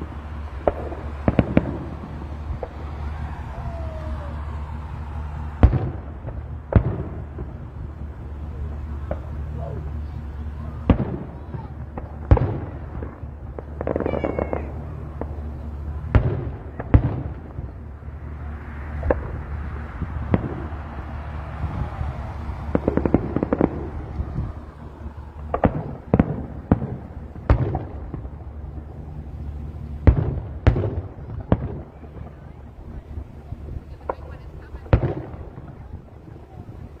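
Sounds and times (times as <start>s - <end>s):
firework whistle: 0.0s - 7.2s, 13.6s - 15.7s, 18.4s - 27.9s
fireworks banging: 0.0s - 37.0s
fireworks crackling: 0.0s - 37.0s
low steady hum: 0.0s - 37.0s.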